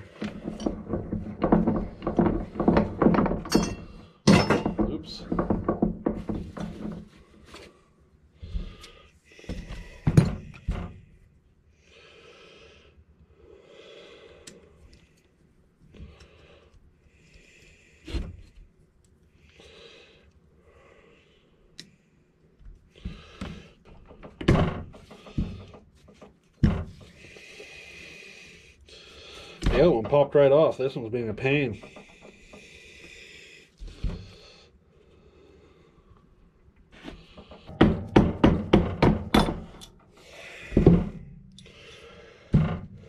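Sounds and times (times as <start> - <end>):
hand tools knocking on metal: 0.2 - 6.7, 37.6 - 39.9.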